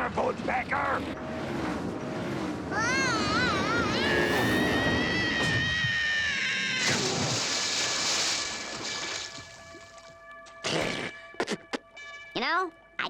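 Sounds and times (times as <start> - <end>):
cartoon character wailing cry: 2.8 - 7.0.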